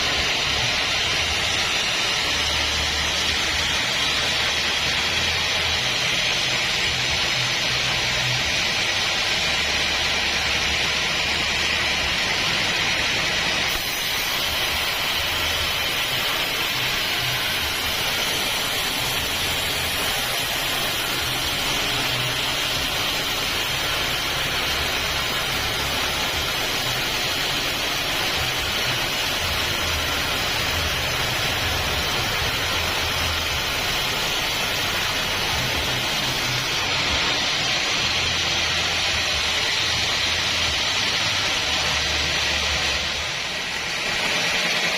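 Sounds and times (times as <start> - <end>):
bandsaw cutting wood: 11.5 - 44.9.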